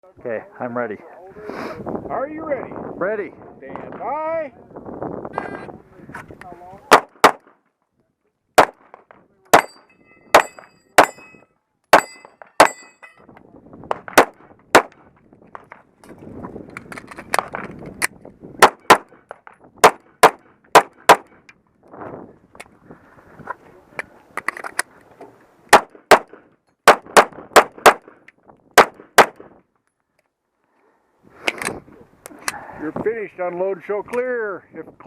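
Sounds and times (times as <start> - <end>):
pistol shots: 6.9 - 7.5, 8.6 - 11.2, 13.9 - 15.0, 18.6 - 19.2, 19.8 - 21.3, 25.7 - 28.2, 28.8 - 29.5
bullets ringing on steel targets: 9.5 - 13.2.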